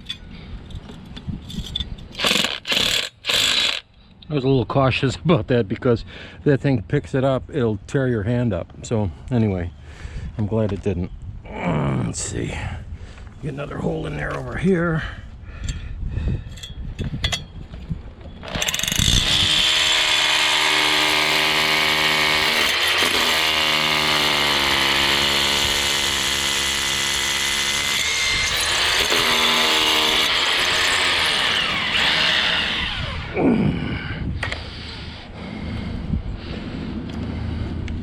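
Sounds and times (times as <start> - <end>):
rotary hammer drilling into concrete: 2.1 - 3.8, 18.4 - 33.4.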